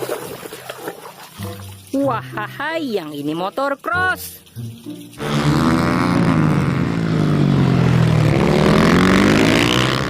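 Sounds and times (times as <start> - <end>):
motocross bike engine running: 5.2 - 10.0.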